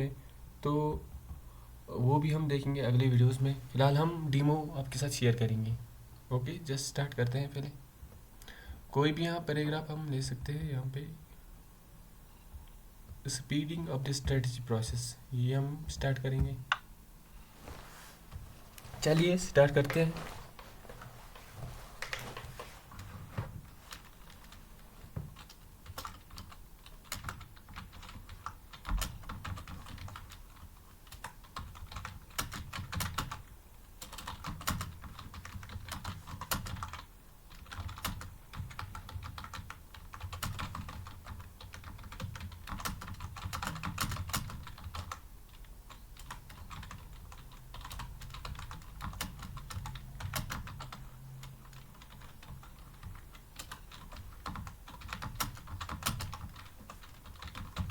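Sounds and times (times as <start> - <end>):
fast typing on keyboard: 23.8 - 57.9.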